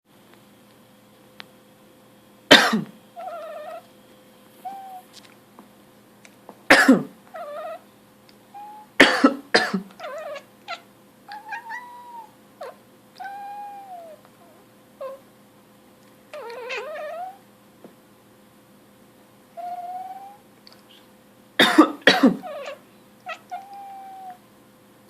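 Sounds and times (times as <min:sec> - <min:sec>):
person coughing: 0:02.5 - 0:03.0, 0:06.7 - 0:07.2, 0:09.0 - 0:09.9, 0:21.6 - 0:22.4
cat meowing: 0:03.2 - 0:03.8, 0:04.6 - 0:05.1, 0:07.3 - 0:07.8, 0:10.0 - 0:14.2, 0:16.3 - 0:17.4, 0:19.6 - 0:20.4, 0:22.4 - 0:24.4.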